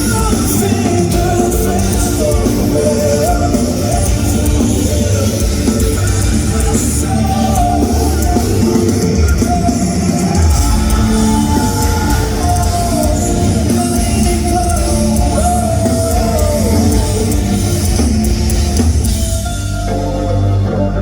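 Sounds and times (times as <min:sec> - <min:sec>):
rock band playing live: 0:00.0 - 0:21.0.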